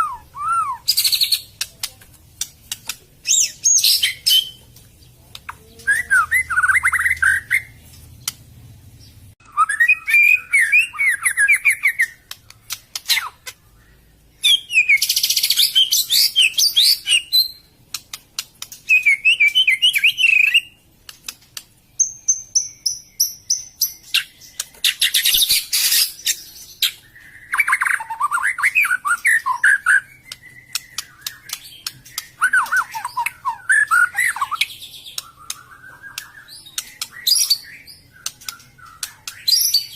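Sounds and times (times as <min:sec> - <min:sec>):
bird singing whistled phrases: 0:00.0 - 0:01.5, 0:05.8 - 0:07.8, 0:09.4 - 0:12.2, 0:13.1 - 0:17.7, 0:18.8 - 0:20.8, 0:22.6 - 0:39.9.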